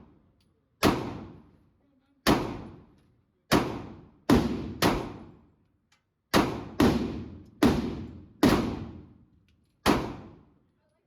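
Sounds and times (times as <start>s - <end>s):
pistol shots with reverberation: 0.8s - 1.5s, 2.2s - 2.9s, 3.5s - 5.4s, 6.3s - 9.2s, 9.8s - 10.5s.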